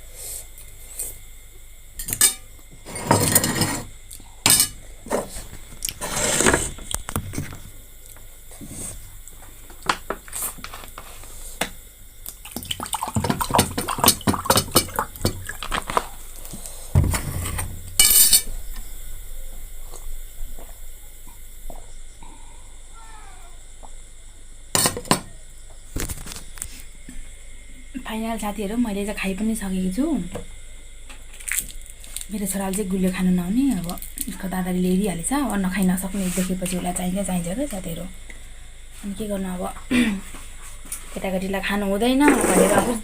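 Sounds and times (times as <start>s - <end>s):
utensils clinking against a bowl: 2.0s - 2.4s.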